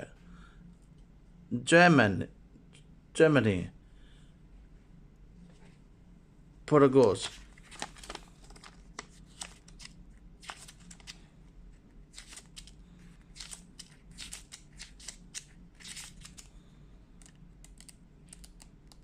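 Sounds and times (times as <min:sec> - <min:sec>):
faint low hum: 0:00.0 - 0:19.0
packaging clicks and rustles: 0:07.2 - 0:11.2.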